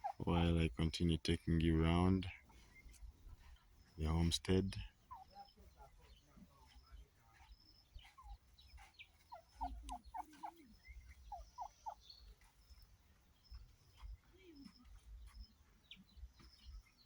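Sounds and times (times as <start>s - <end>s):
faint turkey calls: 0.0s - 17.0s.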